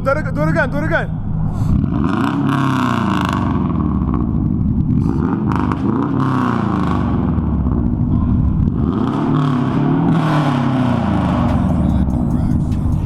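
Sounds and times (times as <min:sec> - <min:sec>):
car engine revving: 0:00.0 - 0:13.0.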